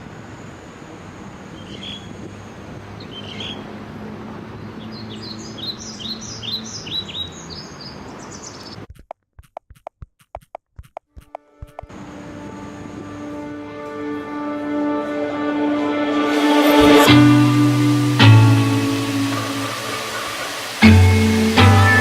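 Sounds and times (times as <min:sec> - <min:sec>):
small birds chirping: 0:01.5 - 0:02.2, 0:03.0 - 0:03.7, 0:04.4 - 0:08.9
sharp clicks: 0:08.9 - 0:11.9
steady rushing background: 0:15.5 - 0:22.0.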